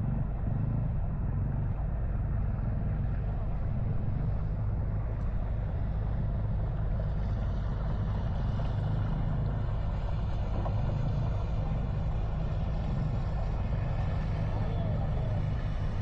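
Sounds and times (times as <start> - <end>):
boat engine rumbling: 0.0 - 16.0.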